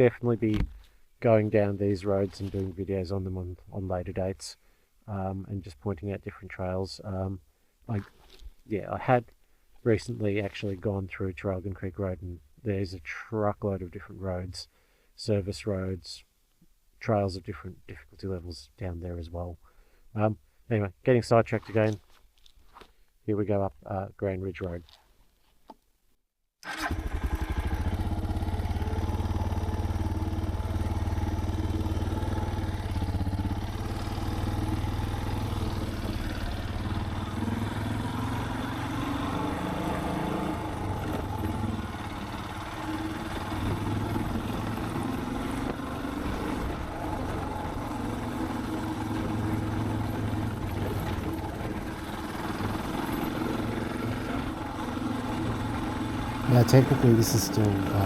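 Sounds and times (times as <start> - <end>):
motorcycle engine running: 26.8 - 58.0.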